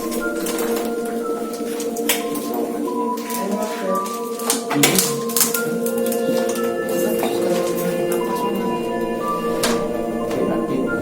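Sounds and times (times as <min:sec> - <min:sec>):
droning tones: 0:00.0 - 0:11.0.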